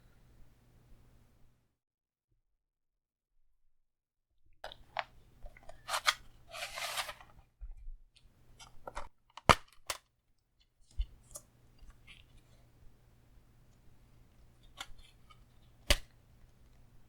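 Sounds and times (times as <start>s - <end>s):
plastic case snapping: 8.6s - 10.0s, 14.7s - 16.2s.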